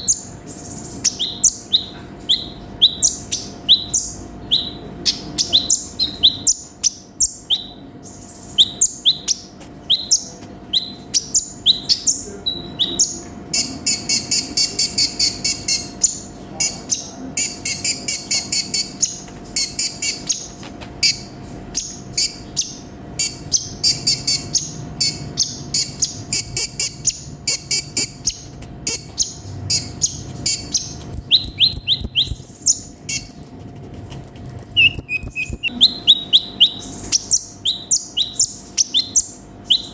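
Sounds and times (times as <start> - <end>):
sunbird singing high chirps: 0.0 - 33.6, 34.2 - 39.9
bird rattling trills: 13.0 - 37.4.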